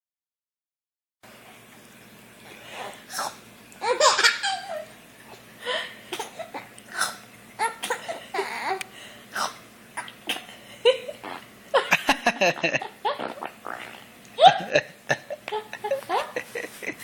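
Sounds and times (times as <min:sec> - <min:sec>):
baby giggling and babbling: 0:15.4 - 0:16.5.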